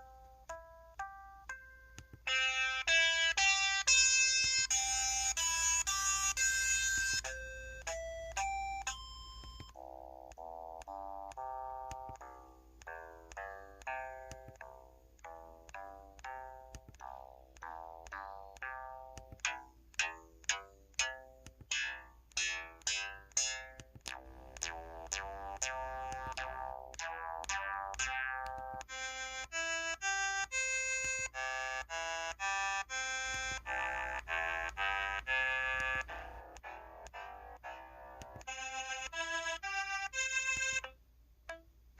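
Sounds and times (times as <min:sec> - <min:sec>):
chord-like electronic notes: 0:00.0 - 0:09.0, 0:22.4 - 0:40.9
phone keypad button tones: 0:06.8 - 0:12.2.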